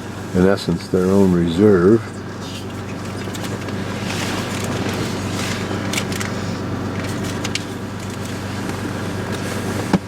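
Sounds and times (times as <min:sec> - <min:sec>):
bus engine drone: 0:00.0 - 0:10.0
road noise: 0:00.0 - 0:10.0
faint clicks and rattles: 0:02.2 - 0:09.4.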